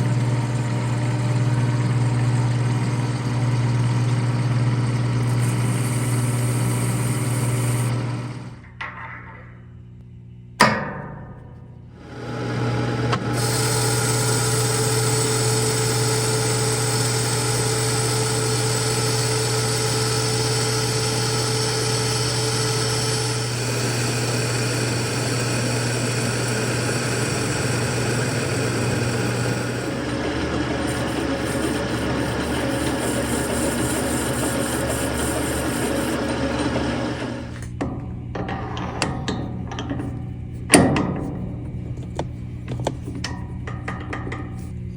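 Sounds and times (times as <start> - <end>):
machine tool humming and whining: 0.0 - 8.9, 12.0 - 44.9.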